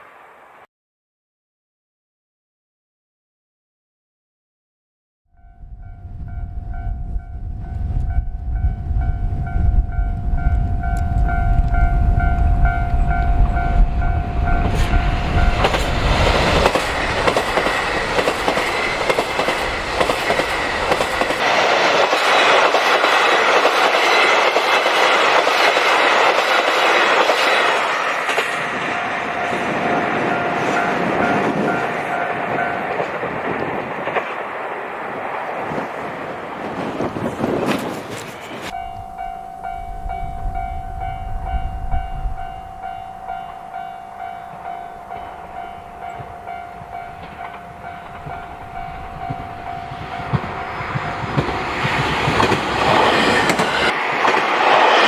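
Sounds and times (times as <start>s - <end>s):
diesel train passing: 5.4s - 55.0s
level-crossing alarm ringing: 23.8s - 33.2s, 38.7s - 53.9s.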